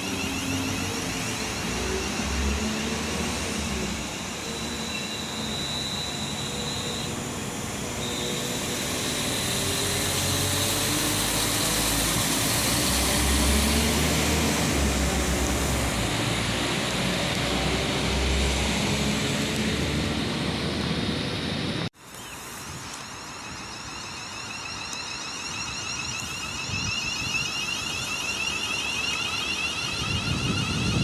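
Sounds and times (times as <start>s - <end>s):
train rumbling past: 0.0s - 21.9s
thin high whine: 0.0s - 31.0s.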